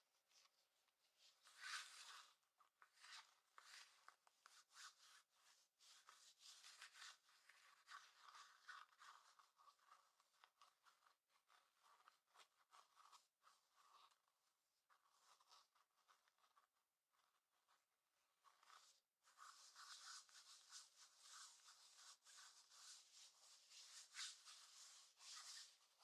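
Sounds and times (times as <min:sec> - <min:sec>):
fabric scratching and rubbing: 0:01.2 - 0:14.2, 0:18.4 - 0:26.0.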